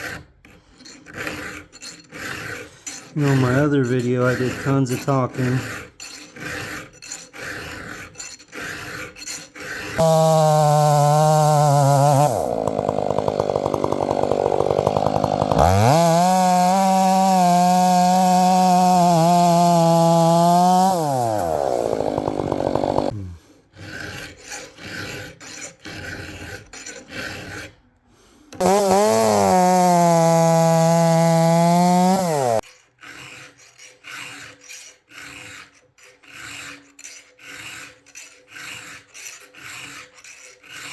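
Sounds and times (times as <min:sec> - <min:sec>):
hand file rasping on chain: 0:00.0 - 0:40.9
chainsaw running at high revs: 0:09.9 - 0:23.4, 0:28.6 - 0:32.6.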